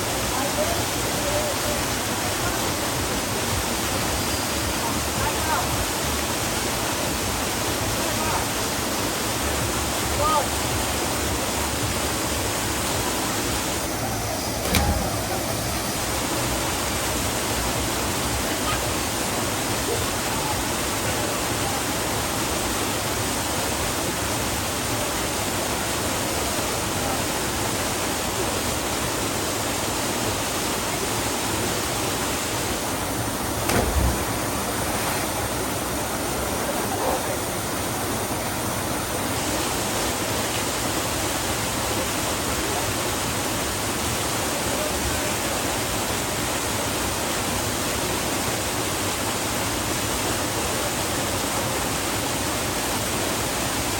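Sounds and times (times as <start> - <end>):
waterfall roaring: 0.0 - 44.6
brief thumps: 13.7 - 16.2, 33.6 - 35.5.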